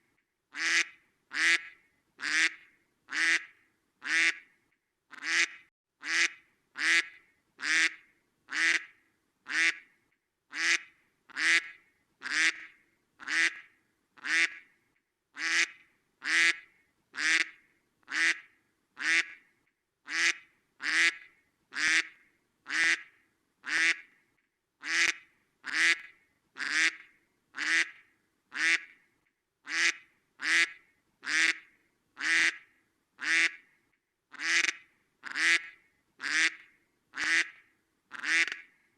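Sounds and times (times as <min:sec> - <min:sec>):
duck quacking: 0:00.5 - 0:04.4, 0:05.1 - 0:08.9, 0:09.5 - 0:09.8, 0:10.5 - 0:14.6, 0:15.4 - 0:16.6, 0:17.2 - 0:19.4, 0:20.1 - 0:21.2, 0:21.8 - 0:22.1, 0:22.7 - 0:24.1, 0:24.8 - 0:27.0, 0:27.6 - 0:28.0, 0:28.6 - 0:28.9, 0:29.7 - 0:31.6, 0:32.2 - 0:32.6, 0:33.2 - 0:33.6, 0:34.4 - 0:36.6, 0:37.2 - 0:38.6.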